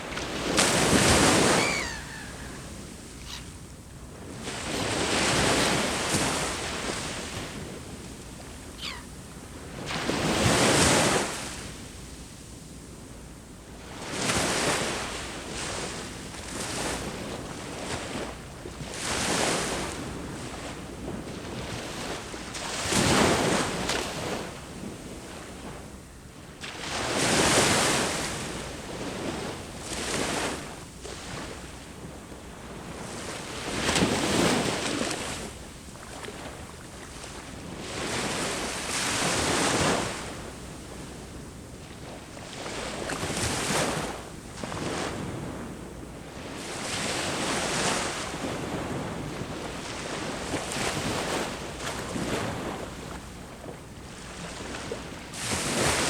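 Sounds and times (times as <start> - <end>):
wind on microphone: 0.0 - 3.6
ocean waves breaking: 0.0 - 11.3.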